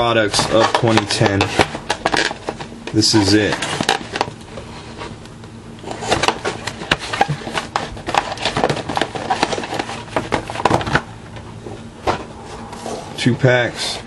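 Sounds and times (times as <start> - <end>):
cellophane crinkling and tearing: 5.8 - 11.0.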